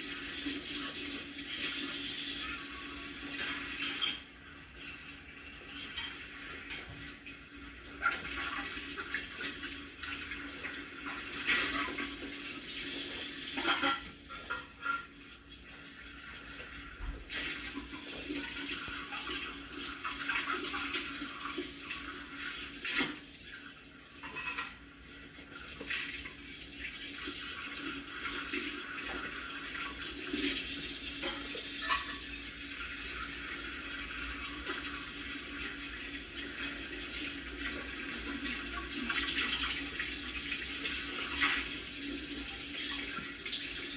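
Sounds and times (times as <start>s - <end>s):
tap water running into sink: 0.0s - 43.9s
dishes clinking: 3.4s - 4.3s, 5.7s - 7.0s, 13.5s - 15.4s, 24.2s - 24.9s, 31.2s - 32.4s
dishware clinking: 13.6s - 15.2s, 24.2s - 24.8s.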